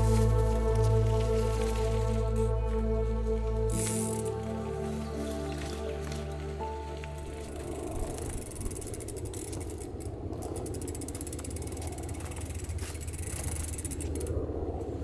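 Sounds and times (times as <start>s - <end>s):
tyres rolling on dirt: 0.0s - 14.3s
freewheel hub clicking: 3.7s - 4.4s, 7.1s - 14.6s.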